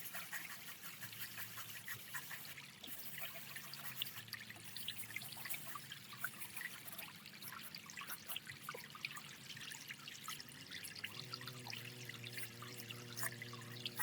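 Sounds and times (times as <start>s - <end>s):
water trickling and dripping: 0.0s - 14.0s
faint low hum: 10.3s - 14.0s.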